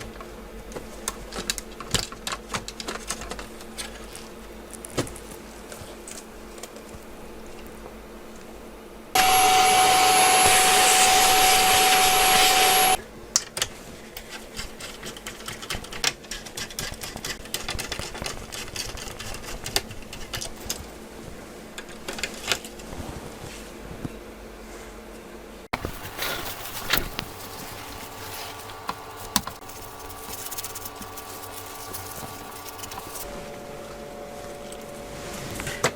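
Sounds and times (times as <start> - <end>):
fan whine: 3.9 - 13.1, 20.6 - 35.9
air blown through cooling fan: 19.4 - 35.9.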